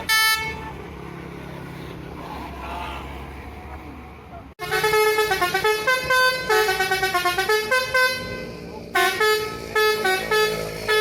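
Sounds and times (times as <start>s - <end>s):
bus horn blast: 0.0s - 0.8s, 4.6s - 11.0s
engine and traffic hum: 0.0s - 11.0s
musical horn melody: 4.6s - 11.0s.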